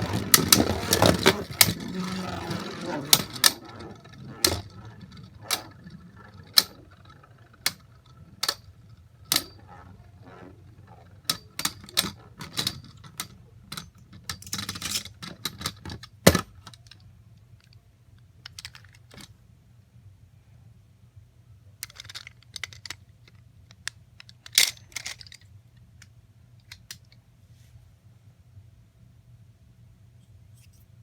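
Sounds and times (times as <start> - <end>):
rustling: 0.0 - 13.1.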